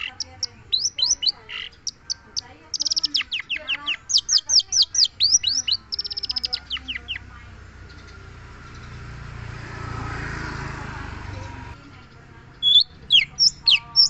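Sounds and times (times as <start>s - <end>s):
bird singing whistles and trills: 0.0s - 7.3s, 12.6s - 14.0s.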